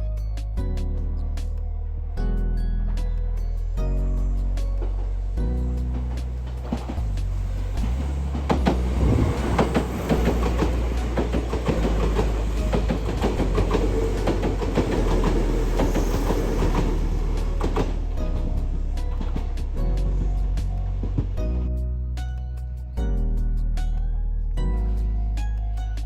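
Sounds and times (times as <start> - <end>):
steady low rumble: 0.0 - 25.6
train wheels clacking over rail joints: 5.7 - 21.4.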